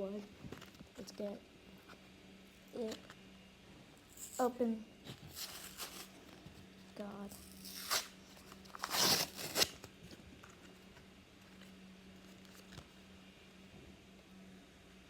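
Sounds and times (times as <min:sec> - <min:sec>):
foil wrapper crinkling rip: 0:05.3 - 0:06.2, 0:07.3 - 0:09.9.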